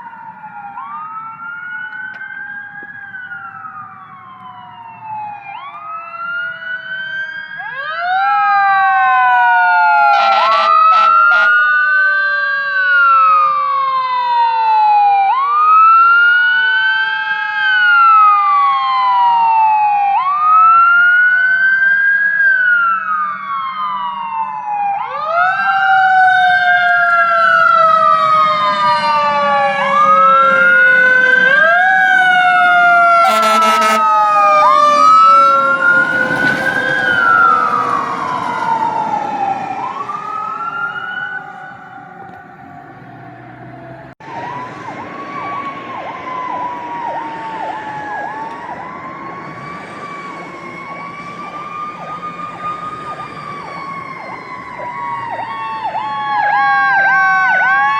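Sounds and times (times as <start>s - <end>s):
sirens wailing: 0.0s - 57.9s
short horn blasts: 33.2s - 34.1s.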